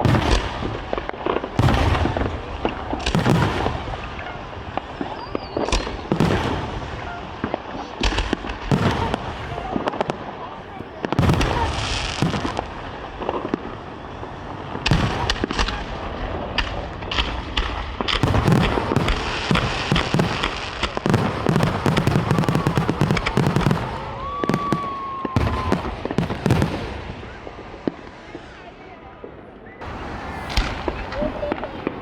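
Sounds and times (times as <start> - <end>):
fireworks bangs: 0.0 - 32.0
firework whistling: 1.5 - 20.7, 29.6 - 32.0.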